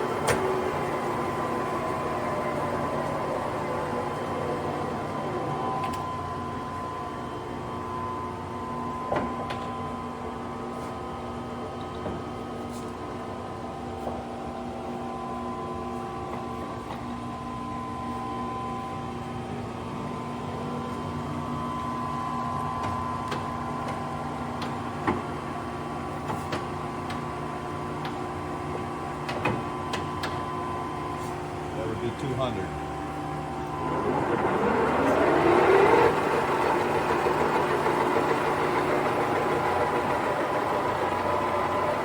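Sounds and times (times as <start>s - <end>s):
lathe running with steady whine: 0.0s - 11.6s, 30.3s - 42.0s.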